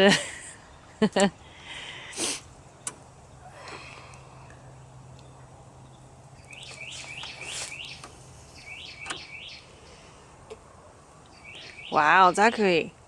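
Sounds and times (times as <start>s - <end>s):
bird chirping: 2.7s - 12.8s
faint sharp clicks: 2.8s - 3.0s.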